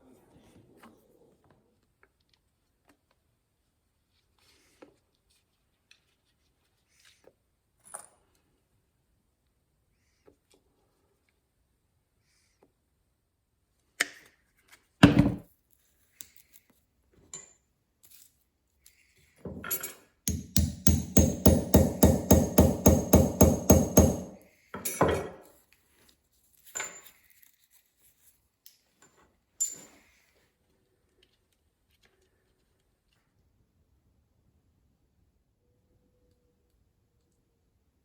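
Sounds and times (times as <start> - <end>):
hammer striking metal: 20.3 - 25.4.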